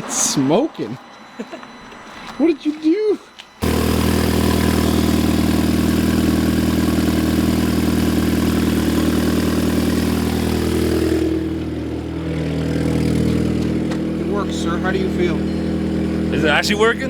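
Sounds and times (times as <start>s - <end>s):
car engine idling: 3.6s - 17.0s.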